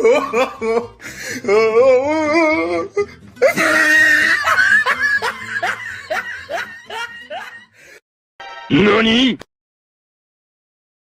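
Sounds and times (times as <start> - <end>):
person laughing: 0.0 - 1.0, 3.4 - 7.7.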